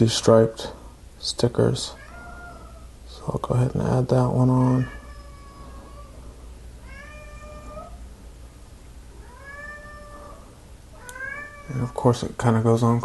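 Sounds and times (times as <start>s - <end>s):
cat meowing: 1.9s - 2.9s, 4.6s - 6.2s, 6.8s - 8.0s, 9.2s - 12.0s.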